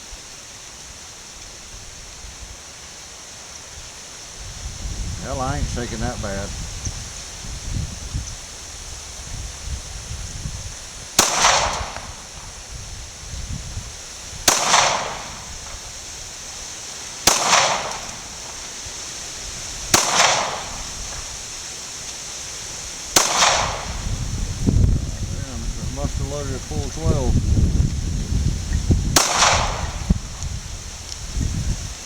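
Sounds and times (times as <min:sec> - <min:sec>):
pistol shots: 0:11.2 - 0:12.3, 0:14.5 - 0:15.5, 0:17.2 - 0:18.6, 0:19.9 - 0:21.3, 0:23.2 - 0:24.0, 0:29.2 - 0:30.1.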